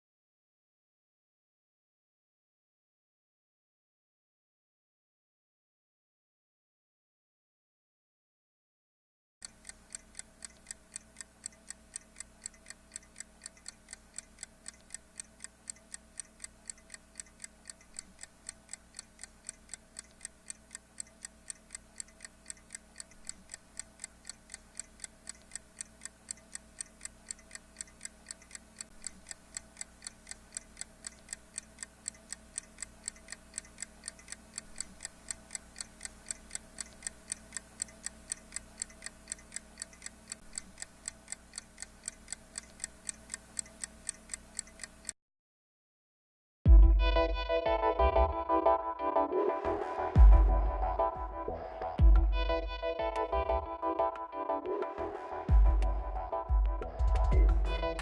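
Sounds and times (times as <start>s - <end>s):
faint steady hum: 9.4s - 45.1s, 47.0s - 58.0s
clock-like ticking: 9.4s - 45.2s, 54.9s - 58.0s.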